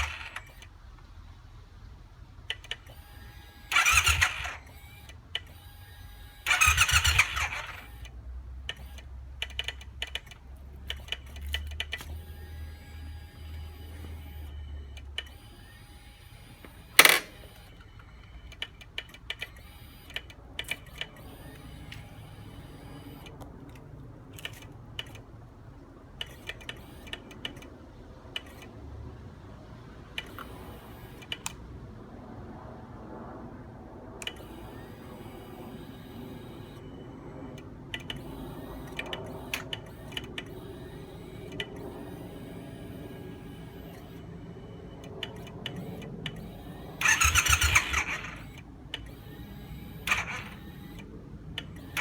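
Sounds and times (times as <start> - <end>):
motorcycle starter motor cranking: 0.0 - 0.8, 2.5 - 8.1, 8.7 - 25.3, 45.2 - 52.0
small clicks from clutch lever: 2.5 - 12.4, 16.5 - 25.3, 26.2 - 28.8, 30.1 - 31.7, 34.2 - 36.8, 37.5 - 44.3, 45.0 - 52.0.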